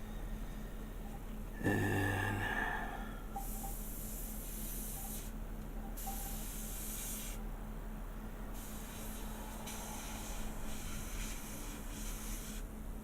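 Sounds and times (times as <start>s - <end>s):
steady tone hum: 0.0s - 3.5s
airbrush spraying hiss: 3.4s - 5.4s, 6.0s - 7.4s, 8.6s - 12.6s.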